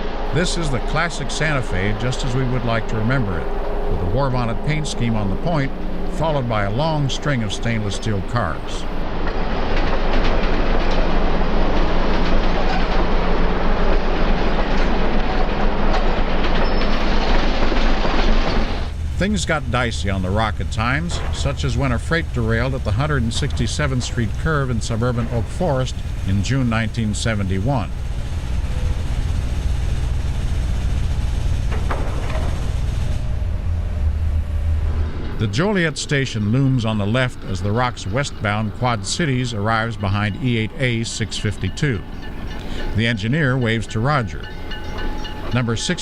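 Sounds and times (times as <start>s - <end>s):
faint pitched sound: 0.0s - 9.0s
train wheels rumbling on rail: 0.0s - 46.0s
faint rail joint clicks: 15.9s - 29.7s, 38.2s - 46.0s.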